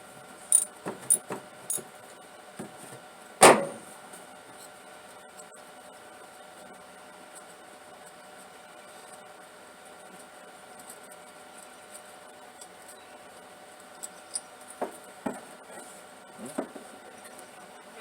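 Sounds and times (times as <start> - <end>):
hand tools clicking on metal: 0.5 - 1.8.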